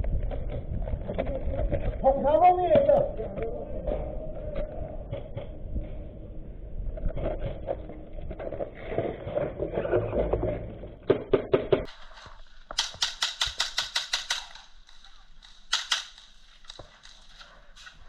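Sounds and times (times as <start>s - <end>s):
airsoft gun shots: 12.8s - 14.7s, 15.7s - 16.3s.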